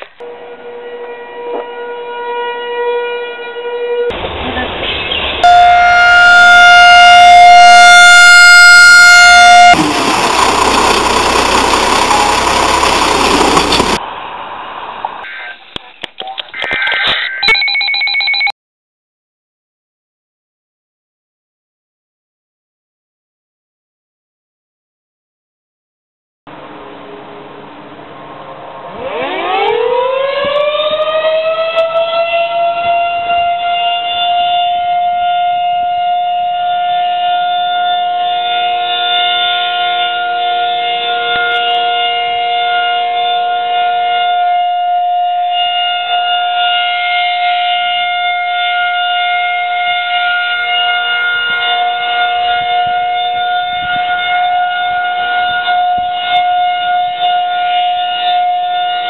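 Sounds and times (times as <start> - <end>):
warning siren rising and holding: 0.2 - 4.2, 5.4 - 14.0, 26.8 - 59.0.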